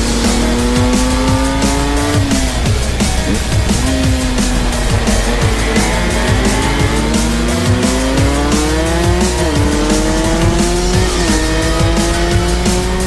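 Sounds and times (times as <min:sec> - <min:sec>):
background music with steady beat: 0:00.0 - 0:13.0
motorcycle engine accelerating: 0:00.0 - 0:13.0.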